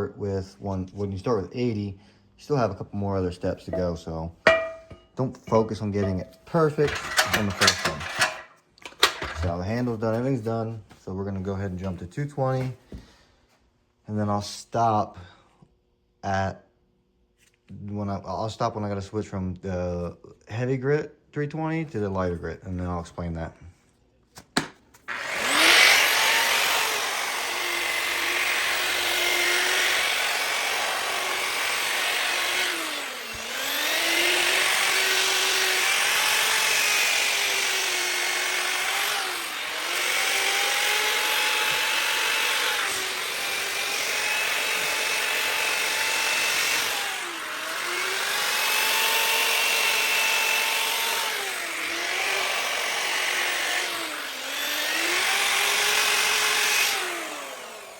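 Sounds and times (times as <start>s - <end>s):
sanding pad on metal: 4.5s - 5.0s, 6.0s - 8.5s
grinder motor whine: 6.0s - 9.5s, 25.1s - 57.9s.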